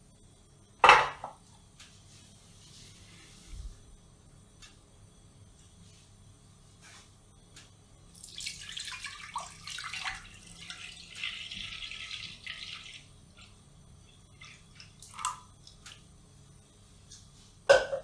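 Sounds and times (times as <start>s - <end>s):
liquid pouring into container: 8.1s - 13.5s.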